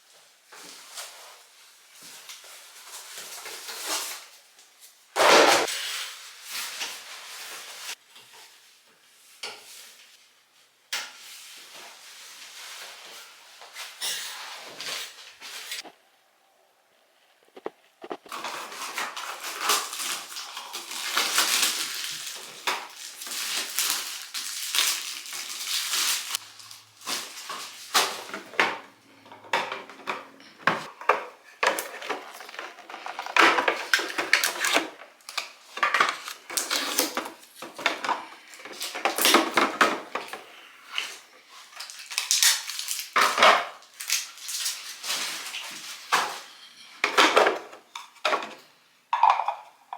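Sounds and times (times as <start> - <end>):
household items clinking and clattering: 17.4 - 49.9.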